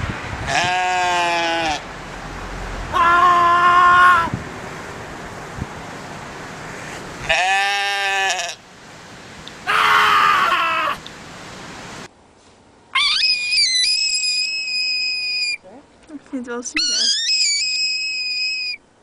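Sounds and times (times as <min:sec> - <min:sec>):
goat screaming: 0:00.5 - 0:01.8, 0:02.9 - 0:04.3, 0:07.2 - 0:08.6, 0:09.6 - 0:11.0, 0:12.9 - 0:15.6, 0:16.8 - 0:18.8
shrill whistling cry: 0:13.0 - 0:15.6, 0:16.8 - 0:18.8.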